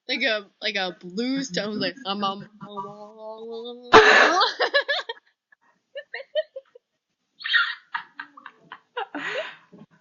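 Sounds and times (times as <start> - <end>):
breathy huffs: 9.2 - 10.0.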